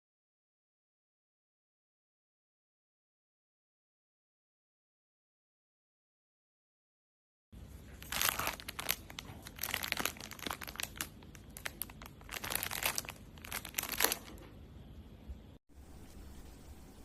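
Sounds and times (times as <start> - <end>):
packaging crinkling: 7.9 - 14.4.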